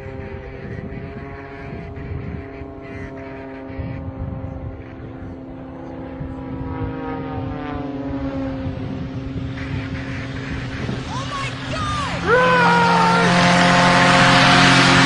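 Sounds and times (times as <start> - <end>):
propeller airplane engine running: 0.0 - 15.0.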